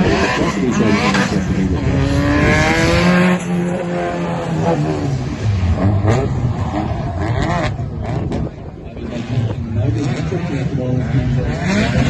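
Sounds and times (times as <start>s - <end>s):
car engine revving hard: 0.0s - 12.0s.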